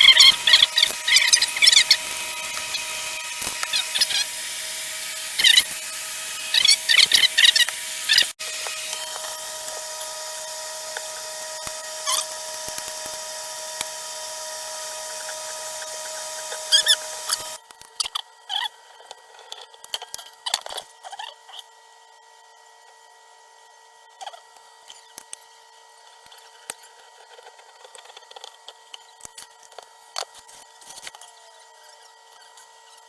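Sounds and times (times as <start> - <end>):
small electric motor whining: 0.0 - 19.5.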